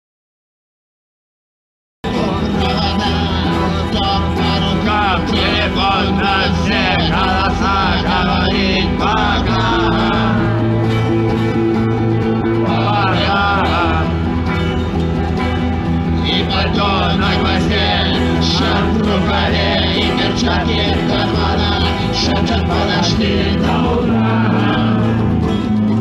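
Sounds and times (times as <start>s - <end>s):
person singing: 2.0s - 10.8s, 12.5s - 14.4s, 16.2s - 25.3s
bass guitar: 2.0s - 26.0s
electric guitar: 2.0s - 26.0s.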